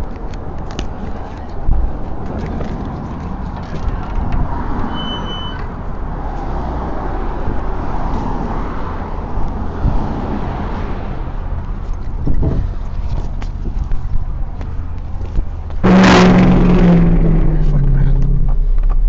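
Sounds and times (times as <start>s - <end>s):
vehicle engine and road rumble: 0.0s - 19.0s
short high beep: 4.9s - 5.7s.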